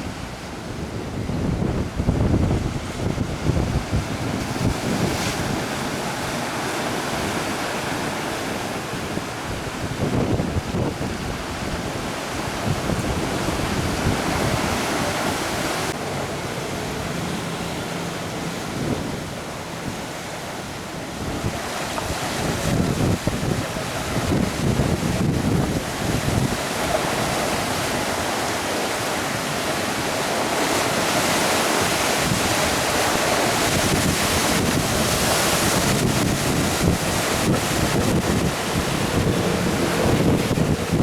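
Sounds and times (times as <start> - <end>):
wind buffeting the microphone: 0.0 - 16.0, 18.6 - 41.0
sea surf washing in: 0.0 - 41.0.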